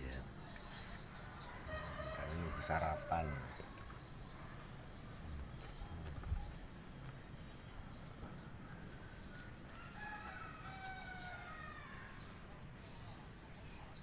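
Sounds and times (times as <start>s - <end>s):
rooster crowing: 1.4s - 3.6s, 9.7s - 12.3s.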